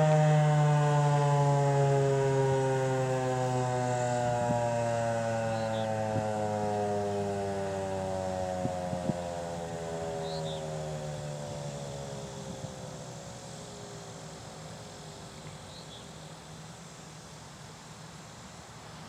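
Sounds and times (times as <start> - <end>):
warning siren winding down: 0.0 - 14.6.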